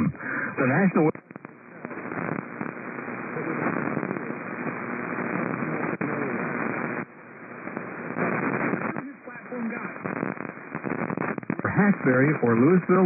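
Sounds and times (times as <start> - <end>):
radio announcer's voice: 0.0 - 1.2, 8.6 - 13.0
radio static hiss: 0.0 - 13.0.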